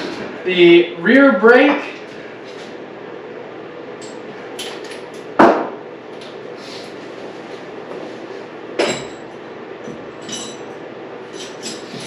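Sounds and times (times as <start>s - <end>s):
steady hum: 0.0s - 12.0s
loud sharp knock: 5.4s - 5.8s
metal tools clanking: 10.2s - 12.0s.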